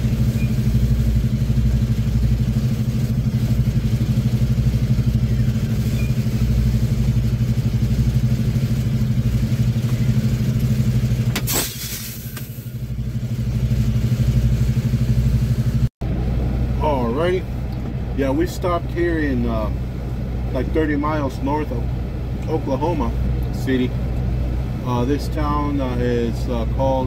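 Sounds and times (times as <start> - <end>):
diesel truck engine running: 0.0 - 27.0
air brake hiss: 11.4 - 12.8.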